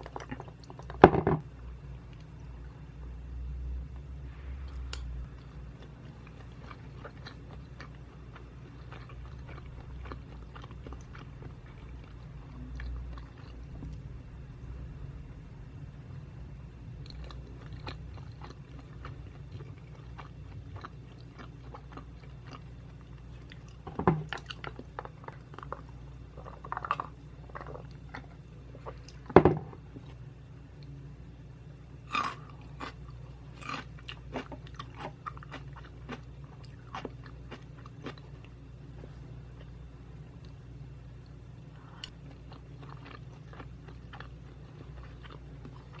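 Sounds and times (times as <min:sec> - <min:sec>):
close chewing with mouth smacks: 0:05.4 - 0:14.0, 0:17.0 - 0:29.3, 0:32.1 - 0:38.5, 0:41.8 - 0:46.0.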